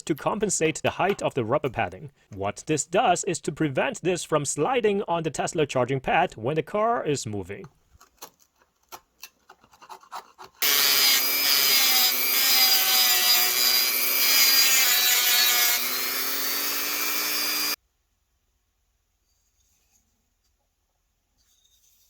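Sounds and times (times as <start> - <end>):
tool grinding hardwood: 9.3 - 17.8.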